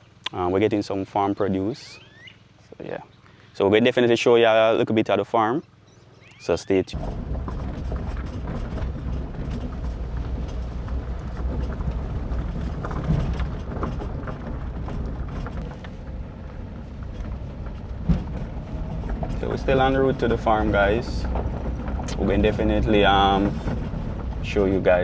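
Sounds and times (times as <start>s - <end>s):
vehicle engine and road rumble: 0.0s - 25.0s
knocks and rattles: 7.0s - 25.0s.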